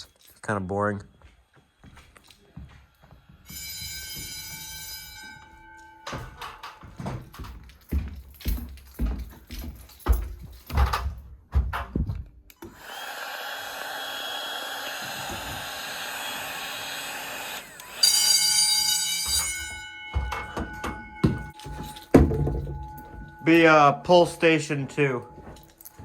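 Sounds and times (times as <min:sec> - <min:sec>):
fire alarm bell ringing: 0:03.4 - 0:08.1, 0:17.4 - 0:26.0.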